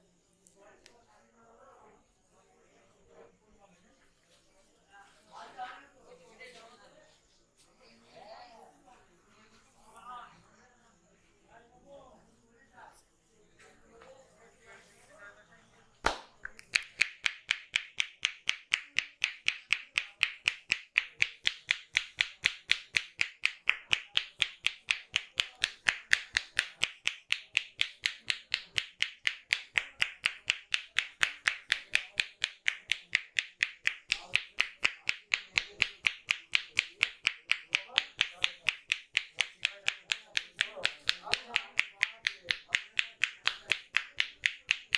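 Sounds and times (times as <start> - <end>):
hands slapping on head: 16.0 - 44.9.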